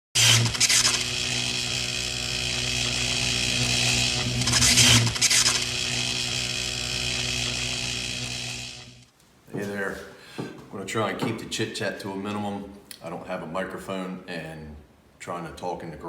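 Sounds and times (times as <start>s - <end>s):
electrical crackle: 0.2s - 9.1s.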